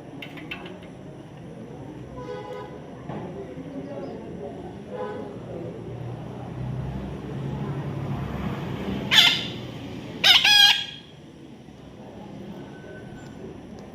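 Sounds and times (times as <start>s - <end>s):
parrot squawking: 9.1s - 9.6s, 10.2s - 11.1s.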